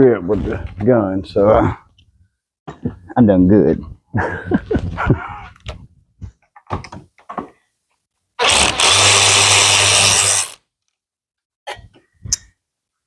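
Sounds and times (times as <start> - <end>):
handheld power tool running: 8.4 - 10.6.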